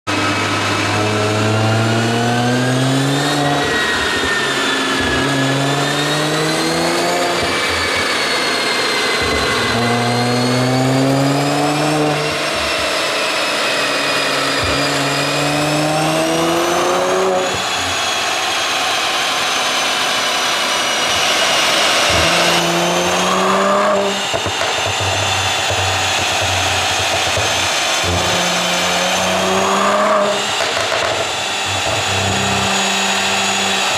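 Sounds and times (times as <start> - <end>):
car engine revving: 0.0 - 33.9
exhaust pops: 2.6 - 13.4, 21.1 - 33.9.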